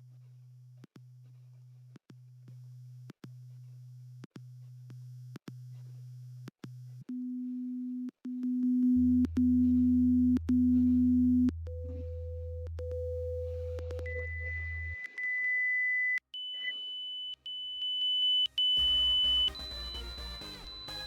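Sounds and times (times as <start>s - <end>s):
steady low hum: 7.1s - 15.0s
hearing test tone beeps: 7.1s - 21.0s.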